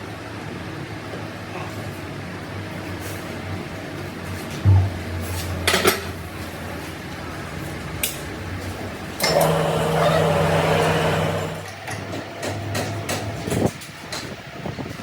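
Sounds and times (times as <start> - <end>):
low machine hum: 4.6 - 12.4
mechanical whirr: 9.2 - 11.7.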